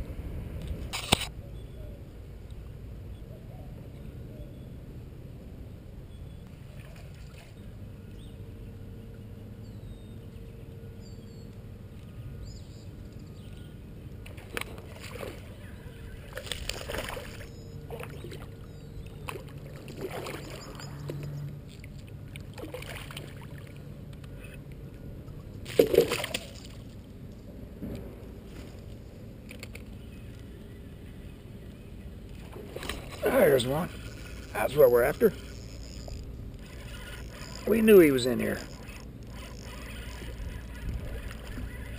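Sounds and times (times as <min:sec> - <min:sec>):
water sloshing around a kayak: 0:13.4 - 0:24.6, 0:25.3 - 0:27.1, 0:32.3 - 0:41.9.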